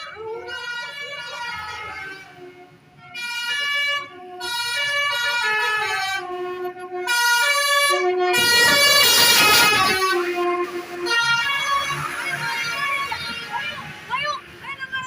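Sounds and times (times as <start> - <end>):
multi-tone horn playing a tune: 0.0 - 14.0
loud rushing noise: 8.4 - 11.1.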